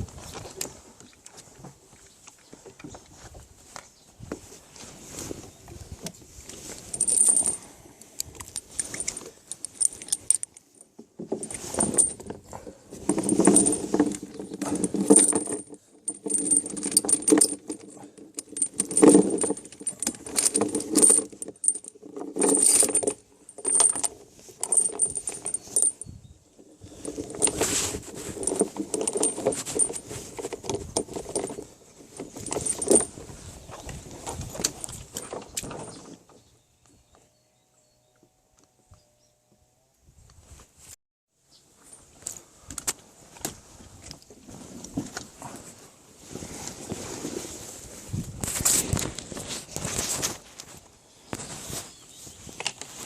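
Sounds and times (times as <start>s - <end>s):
metallic clinking and rattling: 6.7s - 33.3s.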